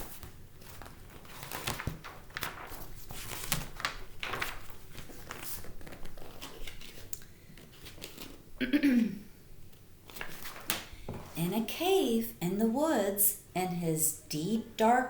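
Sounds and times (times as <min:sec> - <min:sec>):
book pages turning: 0:00.0 - 0:08.5, 0:09.7 - 0:11.4.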